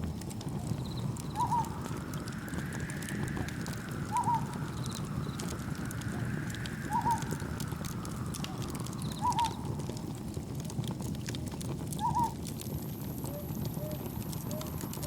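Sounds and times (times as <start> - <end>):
campfire wood crackling: 0.0 - 15.0
faint whistling tone: 0.6 - 10.4
wind rushing: 0.6 - 10.6
gentle waves: 0.8 - 10.6.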